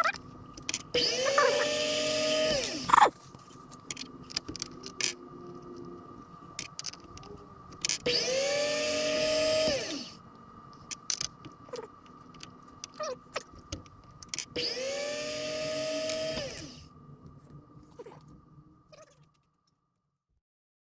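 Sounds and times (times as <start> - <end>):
small electric motor spinning: 0.0 - 3.1, 7.8 - 10.2, 14.4 - 16.9.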